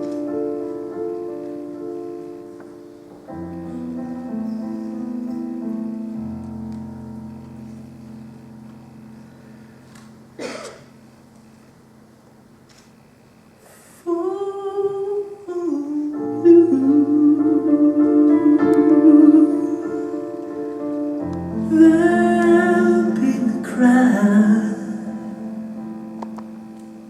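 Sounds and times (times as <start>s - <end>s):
sustained keyboard chords: 0.0s - 12.2s
person humming a melody: 14.0s - 20.4s.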